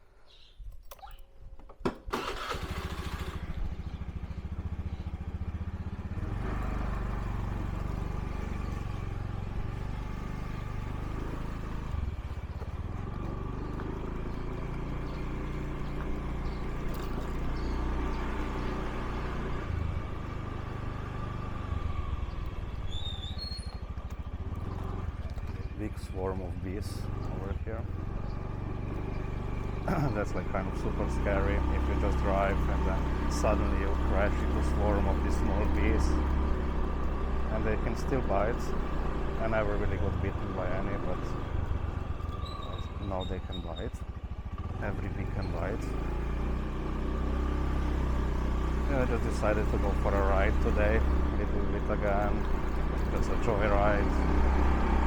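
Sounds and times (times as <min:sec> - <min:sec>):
clicks: 0:00.7 - 0:02.0
motorbike engine running: 0:02.2 - 0:55.0.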